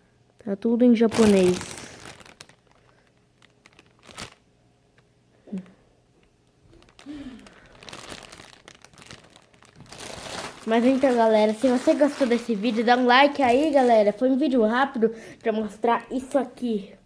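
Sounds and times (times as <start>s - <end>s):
packaging crinkling: 1.1s - 4.5s, 6.6s - 14.3s.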